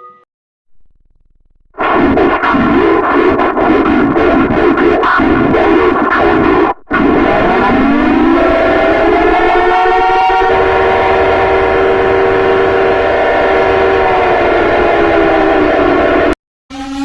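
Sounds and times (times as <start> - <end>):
multi-tone warning siren: 6.9 - 17.0.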